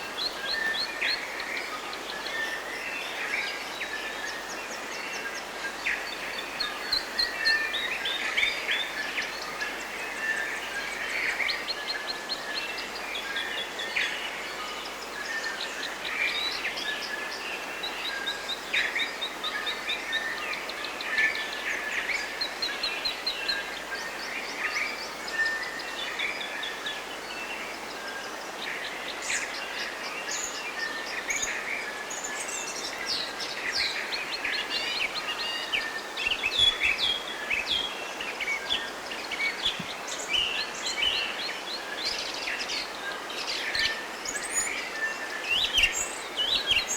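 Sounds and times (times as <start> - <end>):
birds singing and chirping: 30.2 - 46.9.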